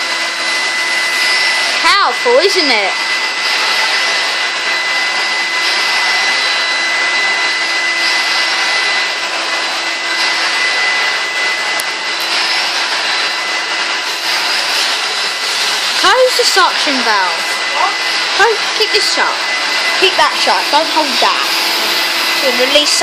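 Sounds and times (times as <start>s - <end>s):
vacuum cleaner running: 0.0s - 23.0s.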